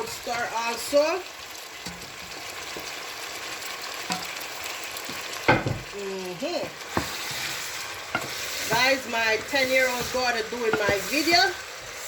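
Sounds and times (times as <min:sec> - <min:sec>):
chicken sizzling in hot oil: 0:00.0 - 0:12.0
spoon knocking on pot: 0:04.1 - 0:04.4, 0:09.9 - 0:11.1.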